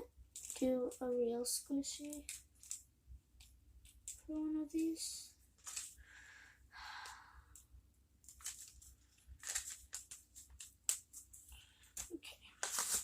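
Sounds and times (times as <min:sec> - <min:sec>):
plastic bag rustling and crackling: 0:05.5 - 0:06.0, 0:08.2 - 0:13.0.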